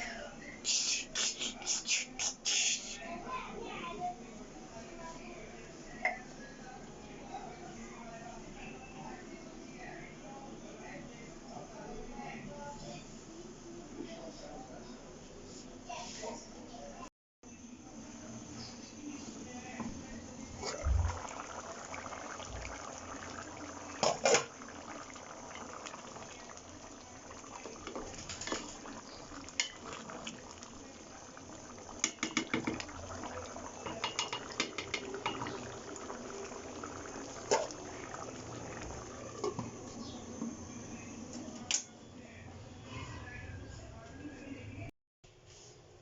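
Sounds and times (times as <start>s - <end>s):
dishes and utensils clinking: 33.8s - 35.6s.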